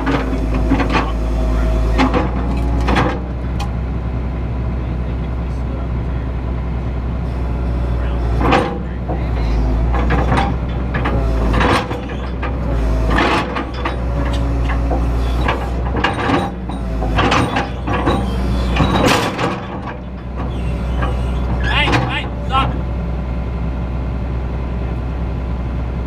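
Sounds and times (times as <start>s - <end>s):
metal clanks and knocks: 0.0s - 3.8s, 8.0s - 22.4s
excavator engine droning: 0.0s - 26.0s.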